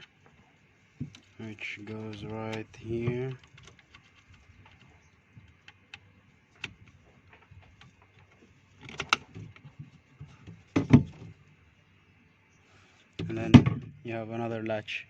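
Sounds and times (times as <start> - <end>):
light clicks and taps: 1.0 - 11.4.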